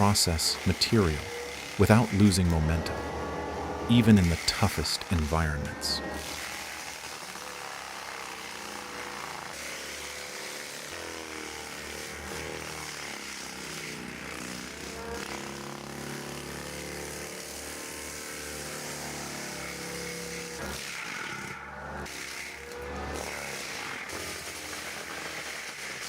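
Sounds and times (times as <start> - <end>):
mulching machine engine under load: 0.0 - 6.3.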